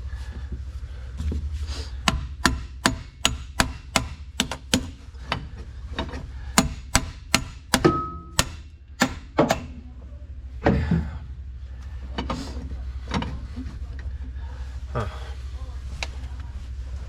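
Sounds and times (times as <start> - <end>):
hammer striking metal: 2.0 - 5.0, 6.6 - 9.9.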